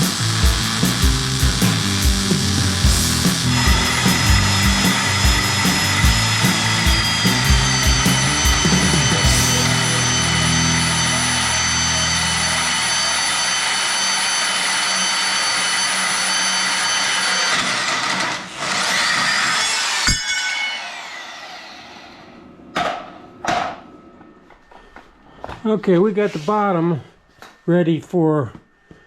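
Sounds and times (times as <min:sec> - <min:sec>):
power tool whining: 0:00.0 - 0:22.6.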